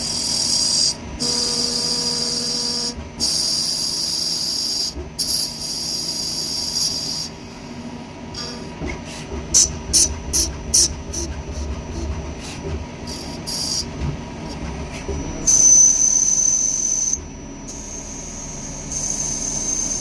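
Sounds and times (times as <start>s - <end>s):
machine whining and hissing: 0.0s - 20.0s.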